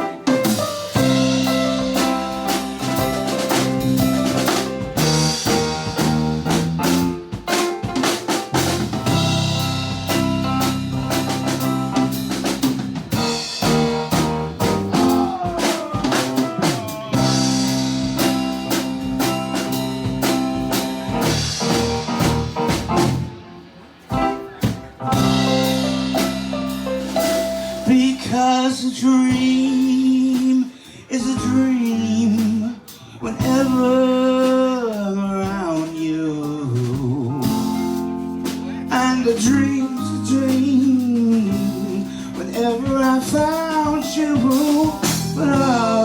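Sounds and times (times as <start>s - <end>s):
snare and bass drum hits: 0.0s - 23.4s, 24.1s - 28.0s
live band playing: 0.0s - 46.0s.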